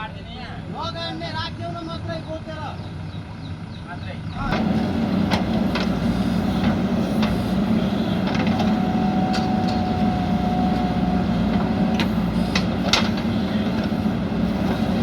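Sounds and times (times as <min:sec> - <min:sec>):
diesel engine running: 0:00.0 - 0:15.0
knocks and clanks: 0:04.5 - 0:15.0.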